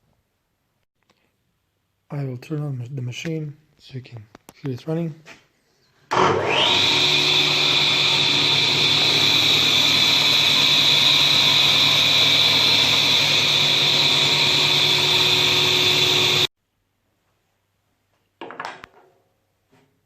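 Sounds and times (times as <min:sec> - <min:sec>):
table saw whining: 0:06.1 - 0:16.5.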